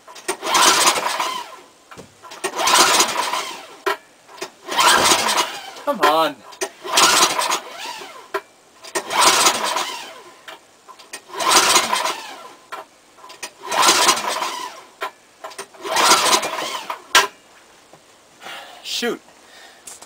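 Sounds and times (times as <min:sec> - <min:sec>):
engine turning over on recoil starter: 0:00.1 - 0:01.6, 0:02.2 - 0:05.8, 0:06.6 - 0:17.3.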